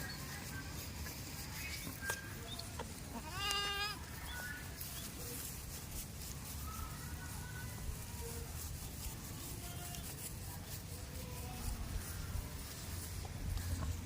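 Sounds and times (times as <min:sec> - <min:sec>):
goat bleating: 0:02.8 - 0:04.1.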